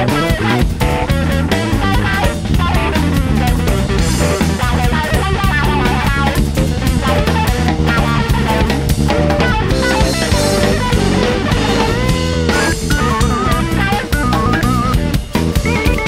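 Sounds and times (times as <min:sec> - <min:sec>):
rock music: 0:00.0 - 0:16.0.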